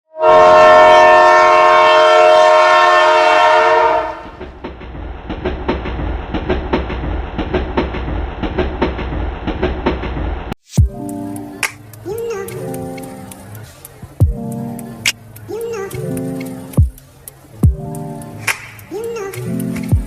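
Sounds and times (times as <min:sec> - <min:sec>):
train horn: 0:00.1 - 0:04.4
low train rumble: 0:00.1 - 0:20.0
train wheels clicking over rail joints: 0:04.2 - 0:20.0.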